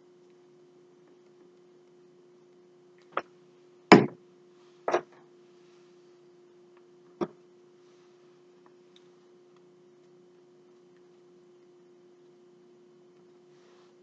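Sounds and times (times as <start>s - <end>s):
steady low hum: 0.0s - 14.0s
taps and knocks on tabletop: 3.9s - 4.2s.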